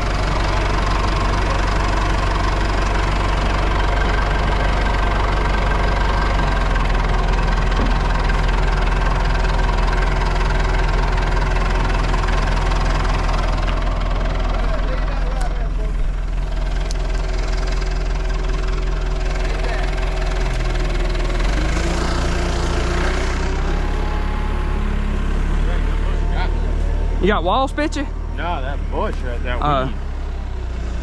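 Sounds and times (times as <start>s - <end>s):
backhoe engine idling: 0.0s - 31.0s.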